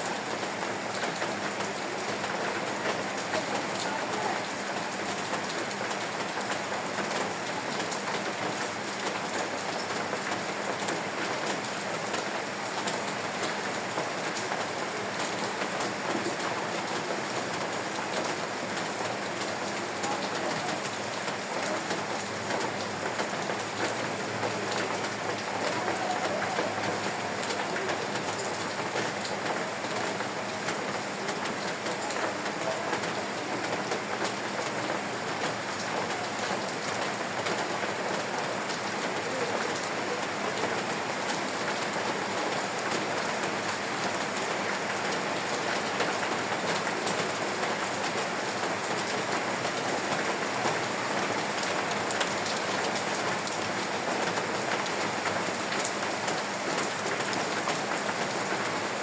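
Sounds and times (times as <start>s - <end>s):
rain falling: 0.0s - 59.0s.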